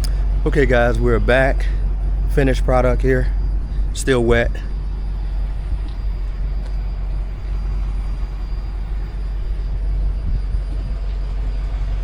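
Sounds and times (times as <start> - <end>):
low engine-like rumble: 0.0 - 12.0.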